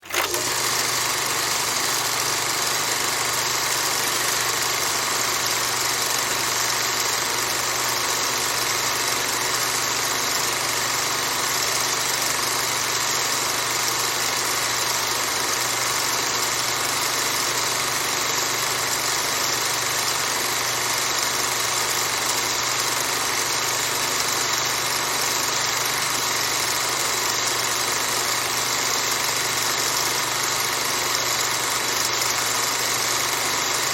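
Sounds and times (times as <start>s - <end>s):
projector humming: 0.0s - 6.1s.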